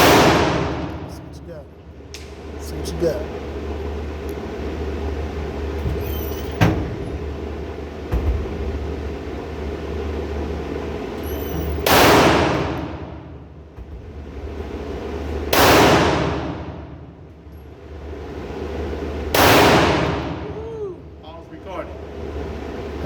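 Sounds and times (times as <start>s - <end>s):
echoing gunshots: 0.0s - 1.1s, 11.8s - 13.2s, 15.5s - 16.9s, 19.3s - 20.5s
steady low hum: 0.0s - 23.0s
small click: 2.1s - 2.4s.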